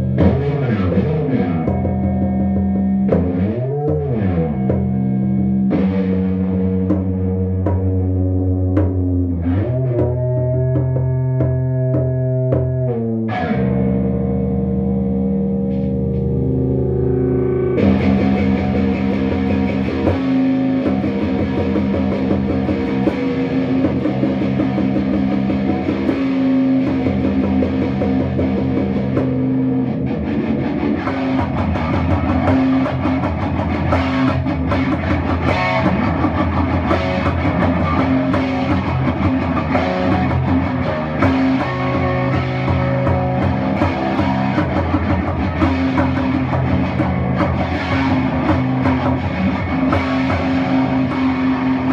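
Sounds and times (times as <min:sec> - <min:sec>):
instrumental rock guitar music: 0:00.0 - 0:51.9
drum hits: 0:30.9 - 0:51.9.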